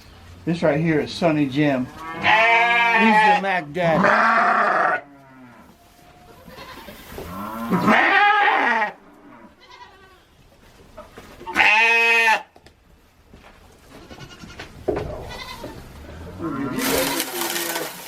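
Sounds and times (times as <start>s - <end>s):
livestock bleating: 1.9s - 10.2s, 11.5s - 12.5s, 14.0s - 14.6s, 15.2s - 15.8s, 16.4s - 18.0s.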